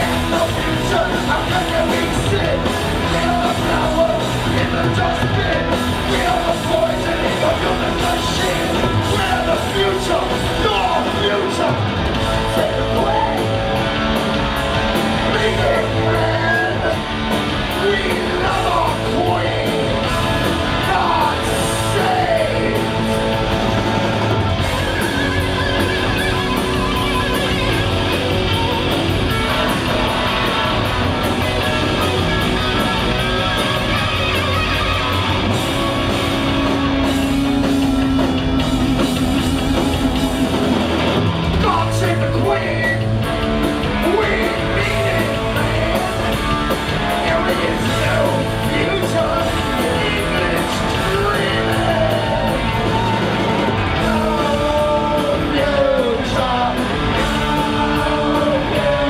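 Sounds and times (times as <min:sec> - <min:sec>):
rock band playing loudly: 0:00.0 - 0:59.0
lead guitar bending notes: 0:23.0 - 0:41.6.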